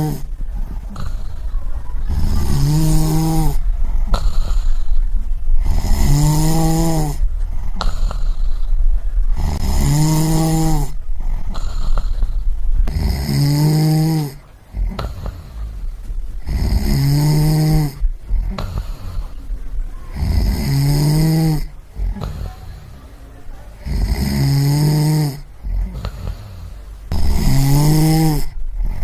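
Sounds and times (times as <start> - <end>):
person snoring: 0.0 - 5.0, 5.6 - 19.4, 20.1 - 23.0, 23.8 - 29.0.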